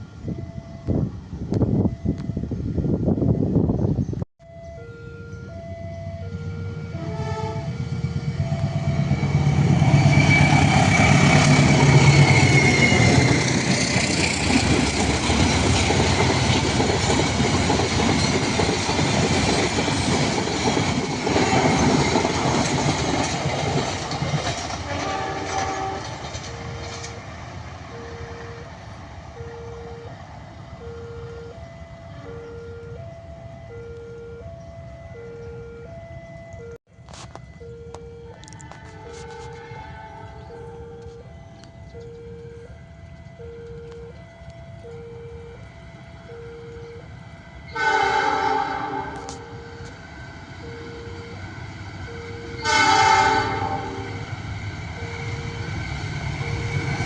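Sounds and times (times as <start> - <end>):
two-tone crossing warning bell: 0.0 - 3.7, 4.4 - 57.0
diesel locomotive engine rumble: 0.0 - 57.0
train wheels clattering: 9.4 - 27.3.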